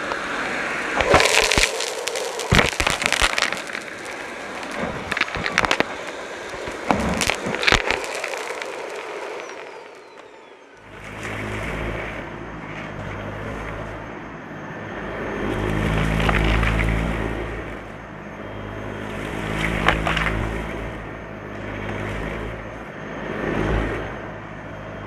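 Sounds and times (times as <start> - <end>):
debris crackling in vacuum: 0.0 - 13.9, 15.4 - 18.1, 19.1 - 22.8.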